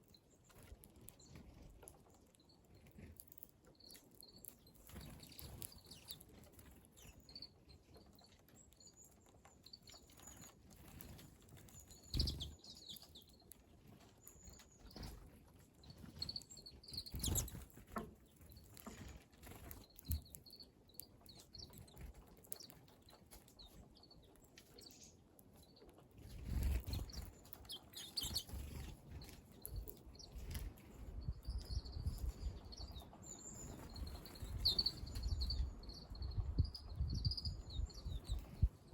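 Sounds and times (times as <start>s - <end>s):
small birds chirping: 0.0s - 38.9s.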